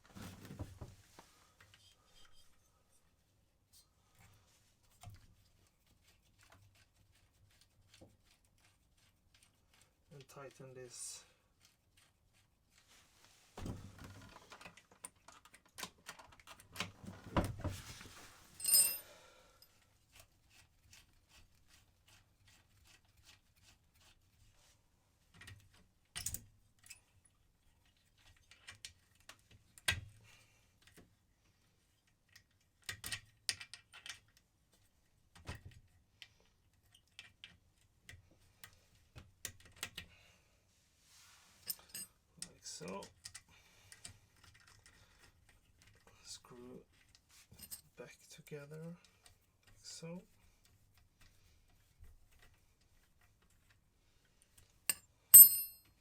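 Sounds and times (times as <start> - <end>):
ringing metal clink: 18.6 - 19.1, 55.4 - 55.9.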